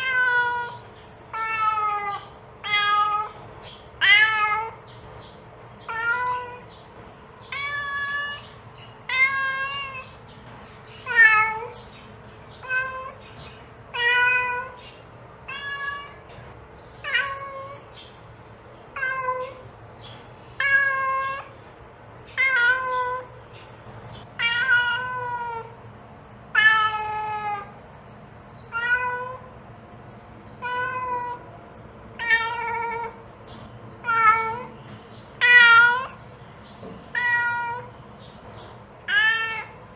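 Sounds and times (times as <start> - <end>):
cat meowing: 0.0 - 3.4, 4.0 - 4.8, 5.8 - 6.8, 7.4 - 10.2, 11.0 - 11.8, 12.6 - 13.3, 13.9 - 14.8, 15.4 - 16.4, 17.0 - 17.9, 18.9 - 19.6, 20.6 - 21.6, 22.3 - 23.4, 24.4 - 25.8, 26.5 - 27.8, 28.7 - 29.5, 30.5 - 31.5, 32.1 - 33.3, 33.9 - 34.8, 35.4 - 36.2, 37.0 - 38.0, 39.0 - 39.9.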